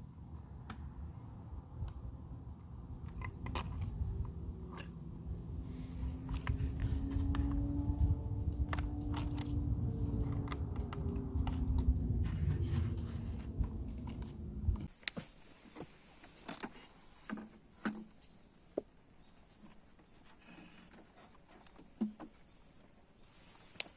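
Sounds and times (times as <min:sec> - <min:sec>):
light clicks and taps: 0:02.9 - 0:15.2.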